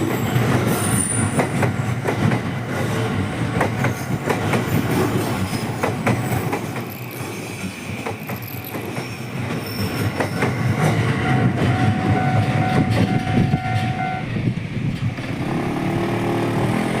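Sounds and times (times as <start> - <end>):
train wheels clacking: 0.0 - 14.0.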